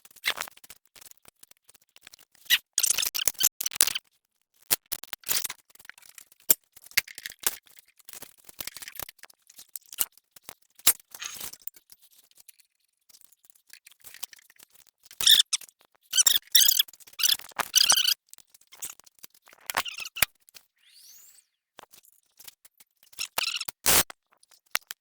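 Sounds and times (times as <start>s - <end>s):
squeaky scrapes: 15.2s - 15.6s, 16.2s - 18.2s, 19.8s - 21.5s, 23.2s - 24.0s.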